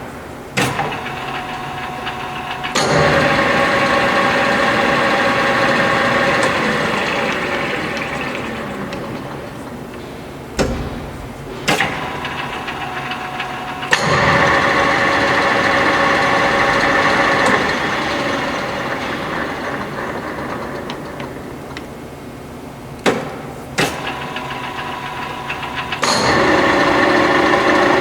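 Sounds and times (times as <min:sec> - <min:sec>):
lathe gearing whine: 0:00.0 - 0:23.0, 0:23.9 - 0:28.0
sharp clunks: 0:08.9 - 0:14.4, 0:23.0 - 0:24.4.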